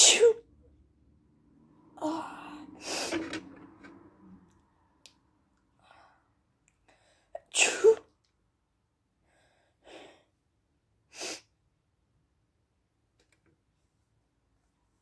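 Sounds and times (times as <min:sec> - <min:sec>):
person sneezing: 0:00.0 - 0:00.4, 0:07.4 - 0:08.1.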